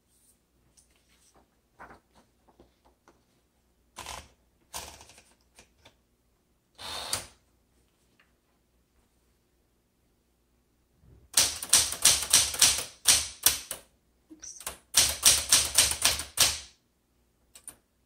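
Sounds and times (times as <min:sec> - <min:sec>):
typewriter clattering rattles: 0:04.0 - 0:05.4, 0:11.4 - 0:13.8, 0:15.0 - 0:16.7
typewriter mechanical clicks: 0:11.4 - 0:13.8, 0:14.6 - 0:16.7.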